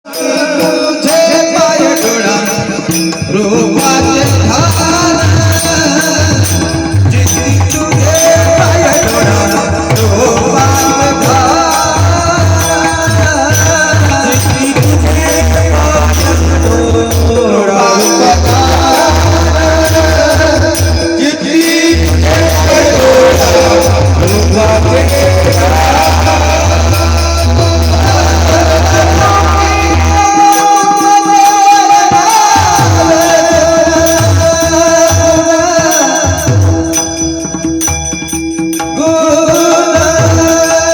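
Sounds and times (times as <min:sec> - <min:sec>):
person singing: 0:00.0 - 0:37.1
jingling hand percussion: 0:00.0 - 0:40.9
drum bass strokes: 0:02.9 - 0:31.0.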